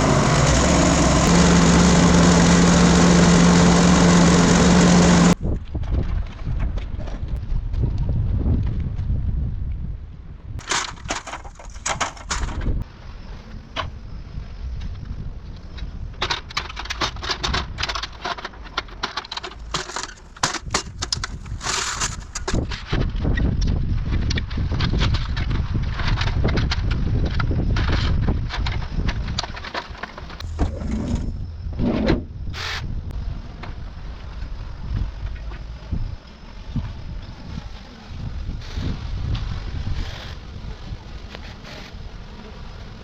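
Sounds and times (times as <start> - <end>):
steady low rumble: 0.0 - 10.6, 30.3 - 41.4.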